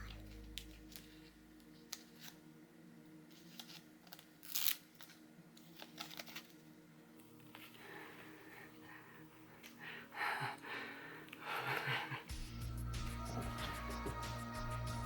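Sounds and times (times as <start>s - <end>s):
packing wrap rustling: 0.0s - 2.5s, 3.3s - 8.0s
wrap ripping: 3.3s - 6.7s.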